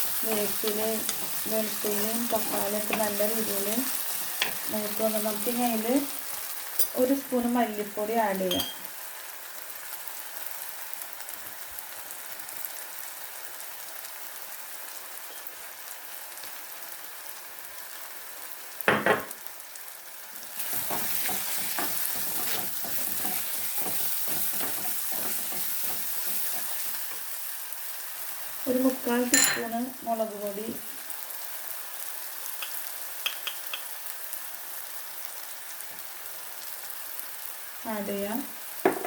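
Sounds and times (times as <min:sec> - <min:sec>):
food sizzling in a frying pan: 0:00.0 - 0:39.0
spoon scraping and stirring: 0:00.2 - 0:03.4, 0:20.6 - 0:27.2
knock: 0:18.9 - 0:19.3.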